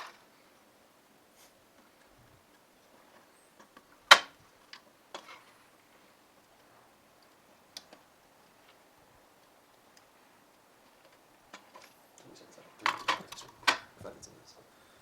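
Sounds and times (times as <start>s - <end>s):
hand tools clicking and tapping: 9.4s - 12.0s, 12.8s - 14.1s.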